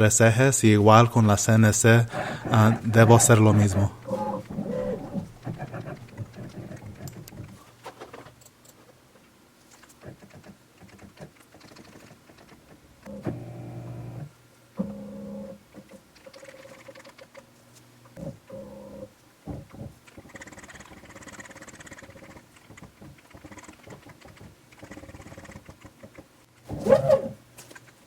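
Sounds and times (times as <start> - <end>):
machine motor hum bursts: 2.0 - 7.2, 13.1 - 15.6
light clicks and handling noise: 27.5 - 28.0.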